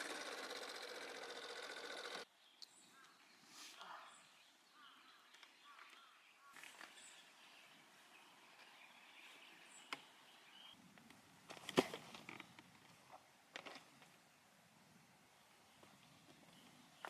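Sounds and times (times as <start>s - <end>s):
faint bird chirps: 2.3s - 10.8s.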